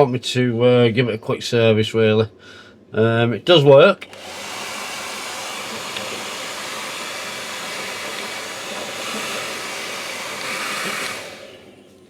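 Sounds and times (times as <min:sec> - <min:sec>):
hairdryer running: 0:04.0 - 0:12.0.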